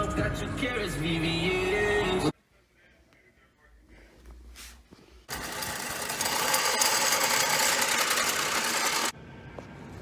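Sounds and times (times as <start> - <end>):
loud mechanical buzzing: 5.3 - 9.1.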